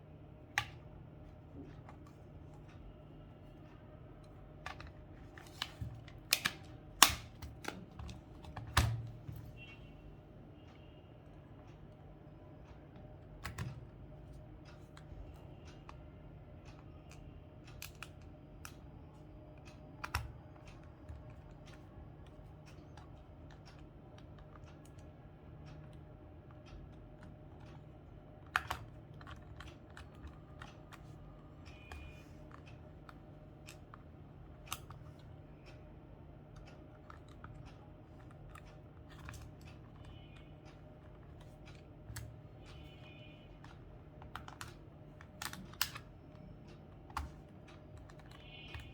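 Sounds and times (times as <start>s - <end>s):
plastic parts clicking: 4.2s - 9.3s, 25.8s - 35.2s, 36.5s - 48.9s.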